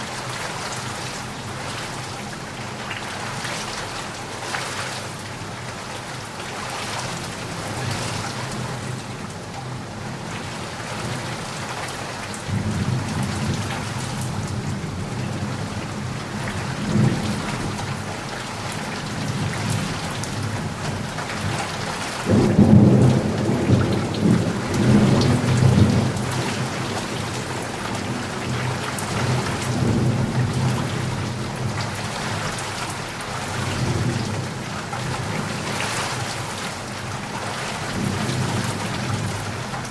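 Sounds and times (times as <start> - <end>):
steady rain: 0.0 - 39.9
thunder rumbling: 22.3 - 32.4.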